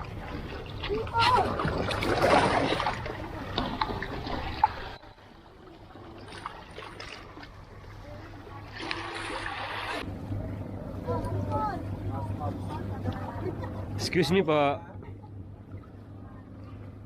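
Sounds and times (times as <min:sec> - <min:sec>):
water splashing and trickling: 0:00.0 - 0:10.2.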